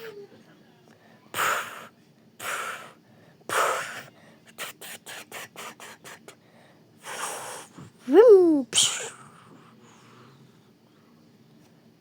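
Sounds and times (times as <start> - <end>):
breathy mouth hiss: 1.4 - 6.4, 7.0 - 8.0, 8.7 - 10.4.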